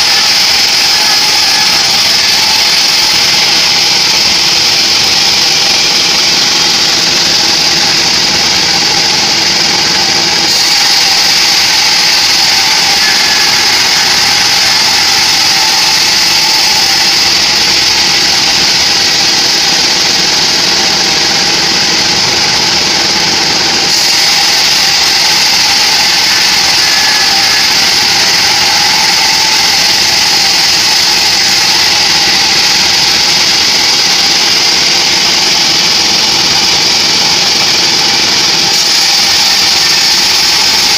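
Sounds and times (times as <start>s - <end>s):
band saw blade hissing through log: 0.0s - 40.9s
sawmill machine running: 0.0s - 40.9s.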